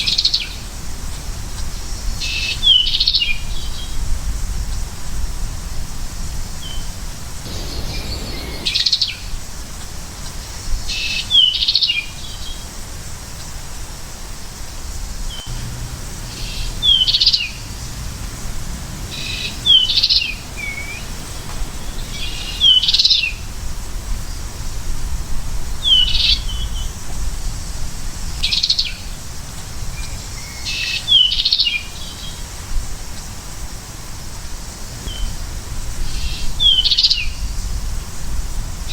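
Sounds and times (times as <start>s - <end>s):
bird chirping calls: 7.4s - 9.3s, 15.3s - 23.4s
low steady rumble: 7.4s - 9.5s, 15.5s - 22.1s.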